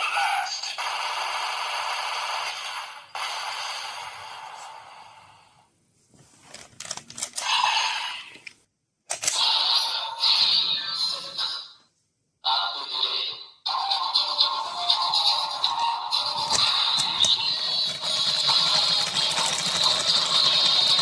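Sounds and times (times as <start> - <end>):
electronic toy sound effects: 9.2 - 11.8, 12.5 - 21.0.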